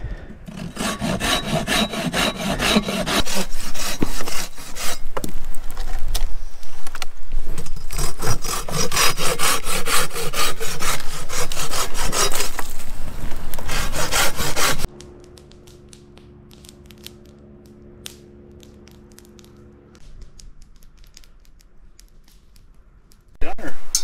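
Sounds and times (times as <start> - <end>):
hand saw cutting wood: 0.5 - 5.2, 7.8 - 14.9
campfire crackling: 3.3 - 8.4, 10.6 - 23.4.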